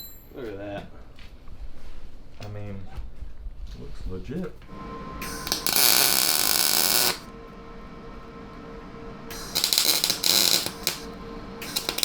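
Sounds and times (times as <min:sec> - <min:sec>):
welding arc crackling: 0:05.2 - 0:07.3, 0:09.3 - 0:12.0.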